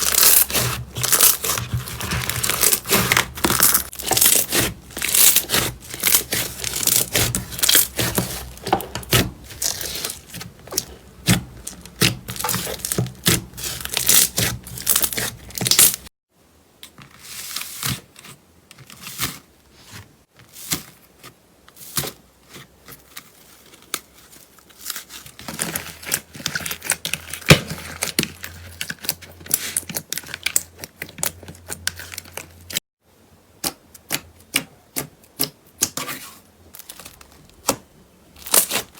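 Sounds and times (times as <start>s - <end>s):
slime squeezed crackling: 0.0s - 16.0s.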